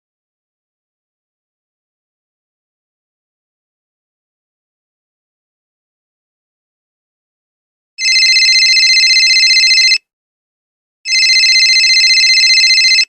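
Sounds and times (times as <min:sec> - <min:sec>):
telephone ringing: 0:08.0 - 0:10.0, 0:11.1 - 0:13.0.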